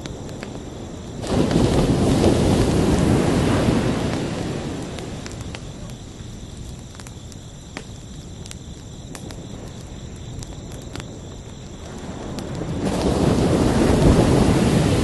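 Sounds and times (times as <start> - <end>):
crickets chirping: 0.0 - 15.0
ocean surf: 1.2 - 5.4, 12.8 - 15.0.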